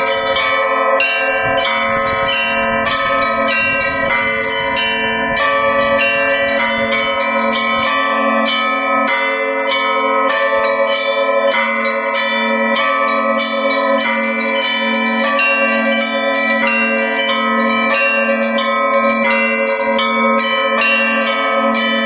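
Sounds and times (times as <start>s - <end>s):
church bells pealing: 0.0s - 22.0s
low bells humming: 0.0s - 22.0s.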